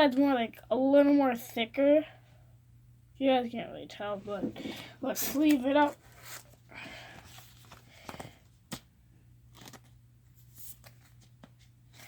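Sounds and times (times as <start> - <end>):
card sliding into plastic sleeve: 9.5 - 9.9.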